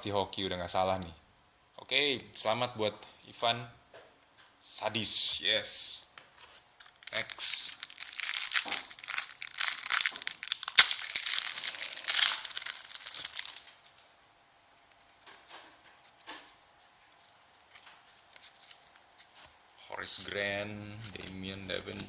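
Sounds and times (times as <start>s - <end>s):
cards rustling and clicking: 6.8s - 13.9s
plastic wrapper tearing and crinkling: 6.8s - 14.0s.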